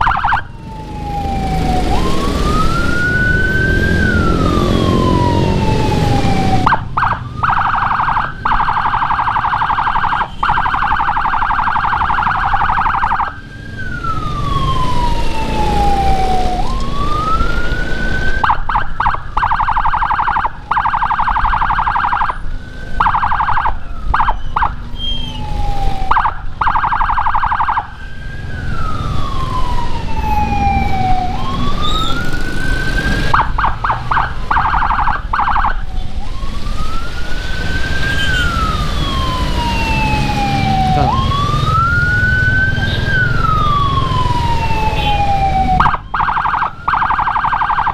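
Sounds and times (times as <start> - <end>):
electronic siren wailing: 0.0 - 47.9
engine and road noise: 0.0 - 47.9.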